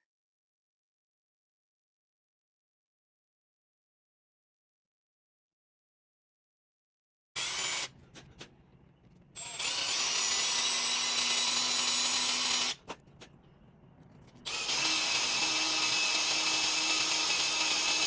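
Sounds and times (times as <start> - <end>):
power drill boring into bolt: 7.4 - 7.9, 9.4 - 12.8, 14.5 - 18.0.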